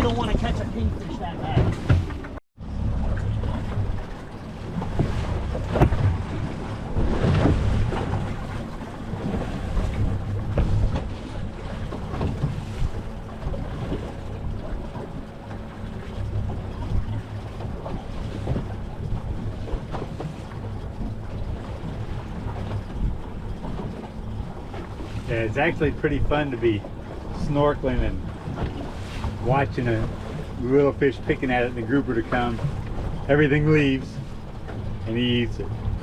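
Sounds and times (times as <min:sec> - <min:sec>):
wind buffeting microphone: 0:00.0 - 0:25.3
boat engine low rumble: 0:00.0 - 0:36.0.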